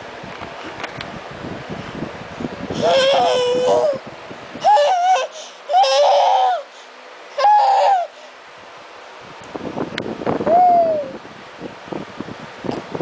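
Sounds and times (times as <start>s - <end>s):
baby crying: 2.8s - 4.0s, 4.6s - 6.7s, 7.4s - 8.2s.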